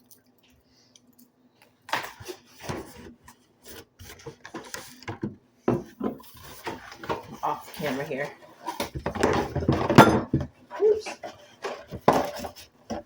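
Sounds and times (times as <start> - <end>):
objects scraping on wooden surface: 2.2 - 10.0.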